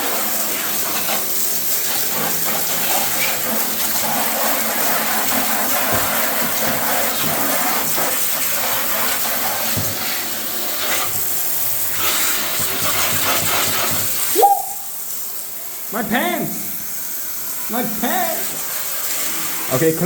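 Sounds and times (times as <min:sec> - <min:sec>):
water rushing: 0:00.0 - 0:20.0
rising vocal yelp: 0:14.3 - 0:14.9.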